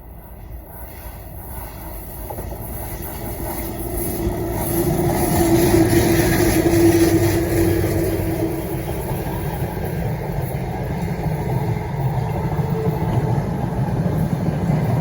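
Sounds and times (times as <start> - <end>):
locomotive hum: 0.0 - 15.0
wheel on rail rumble: 1.4 - 15.0.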